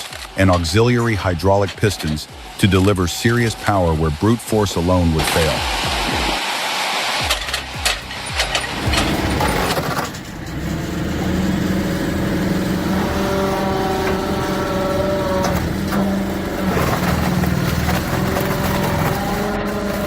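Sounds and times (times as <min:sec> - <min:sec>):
diesel engine running under load: 0:07.2 - 0:20.0.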